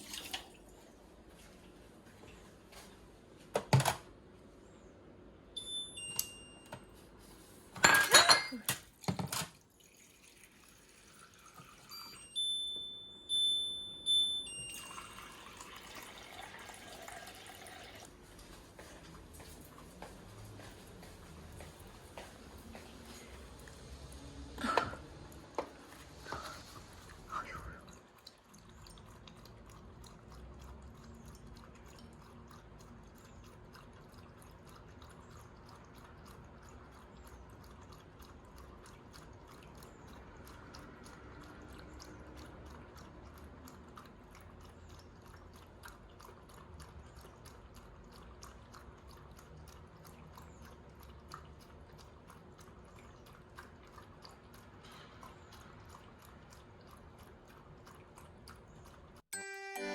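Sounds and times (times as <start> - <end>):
dog lapping water: 15.6 - 59.3.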